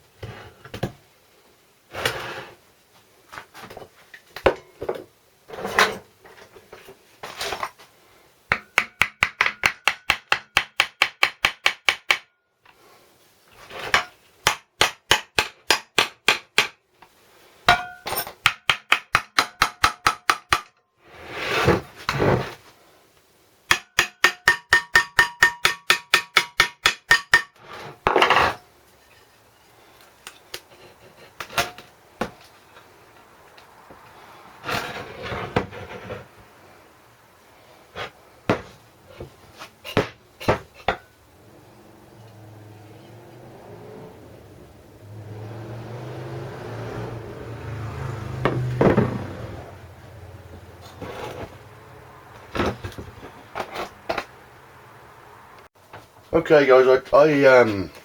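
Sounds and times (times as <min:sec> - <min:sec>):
tools knocking and scraping metal: 0:17.7 - 0:20.7, 0:23.7 - 0:29.4.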